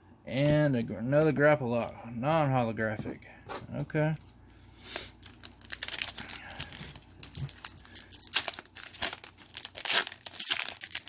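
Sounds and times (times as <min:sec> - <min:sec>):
foil wrapper crinkling and tearing: 0:04.8 - 0:11.0.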